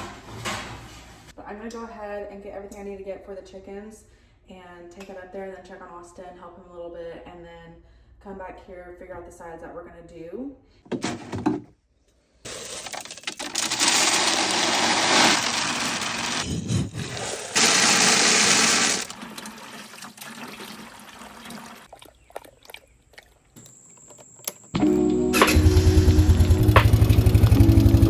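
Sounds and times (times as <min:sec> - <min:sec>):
water running from a tap: 0:17.6 - 0:21.9.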